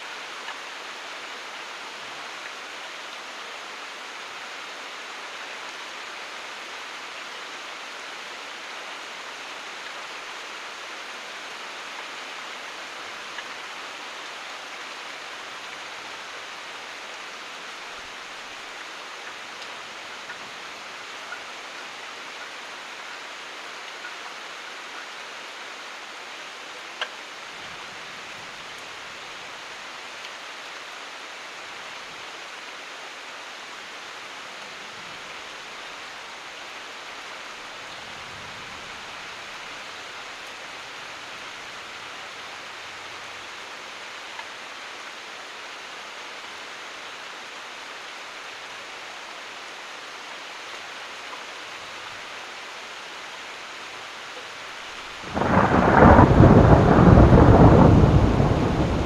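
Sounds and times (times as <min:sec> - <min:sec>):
steady rain hissing: 0:00.0 - 0:59.0
thunderclap rumbling: 0:55.3 - 0:59.0.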